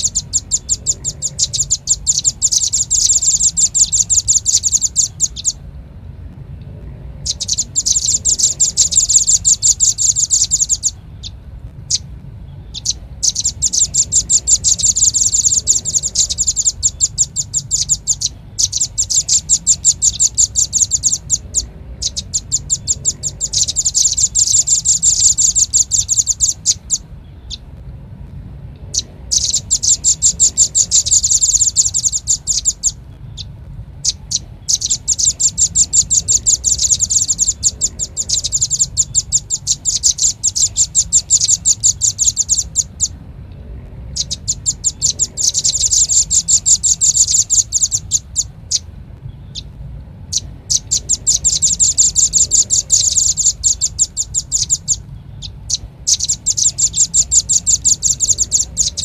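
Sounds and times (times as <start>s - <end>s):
bird high chips: 0.0s - 5.6s, 7.2s - 27.7s, 28.9s - 43.2s, 44.1s - 48.9s, 50.3s - 59.0s.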